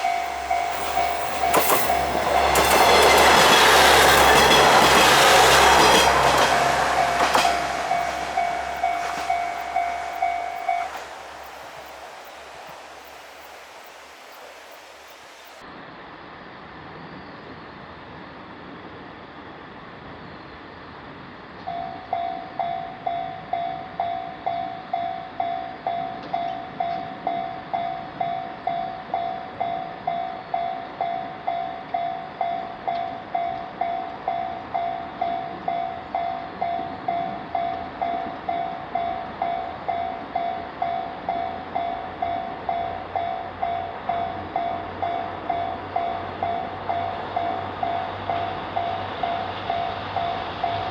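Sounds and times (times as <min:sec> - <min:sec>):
approaching train rumble: 0:00.0 - 0:15.6, 0:27.3 - 0:50.9
railroad crossing bell ringing: 0:00.0 - 0:15.6, 0:21.7 - 0:50.9.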